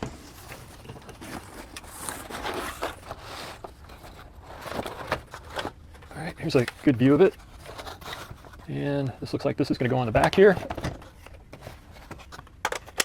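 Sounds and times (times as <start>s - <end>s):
cardboard scraping and rustling: 0.0s - 9.0s.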